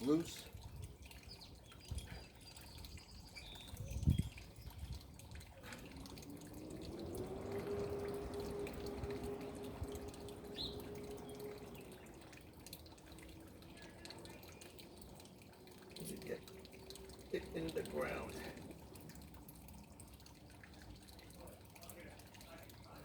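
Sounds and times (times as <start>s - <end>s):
water dripping and trickling: 0.0s - 23.0s
droning hum rising in pitch: 6.0s - 12.7s.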